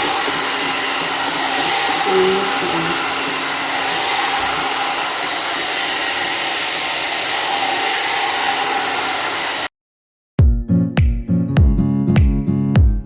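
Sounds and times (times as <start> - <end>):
hot air brush blowing: 0.0 - 9.7
music: 10.4 - 13.0.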